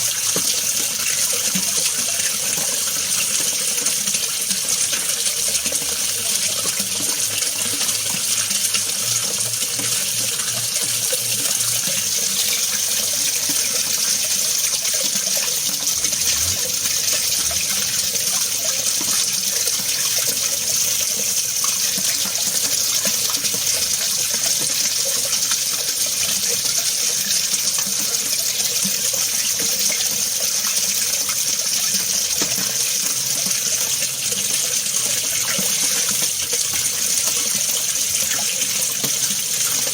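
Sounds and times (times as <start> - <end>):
water rushing: 0.9 - 27.2.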